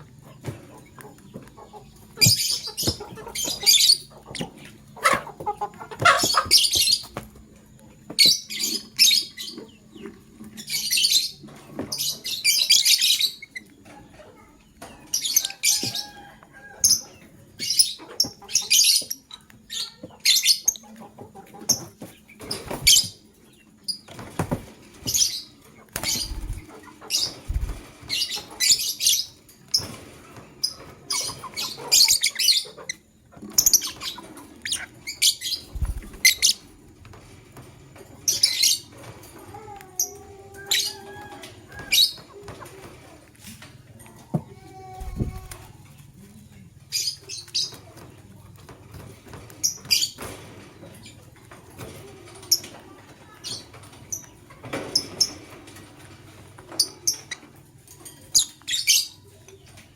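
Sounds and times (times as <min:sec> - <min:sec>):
lovebirds chirping: 0:00.2 - 0:07.2, 0:25.0 - 0:29.9, 0:30.6 - 0:36.8.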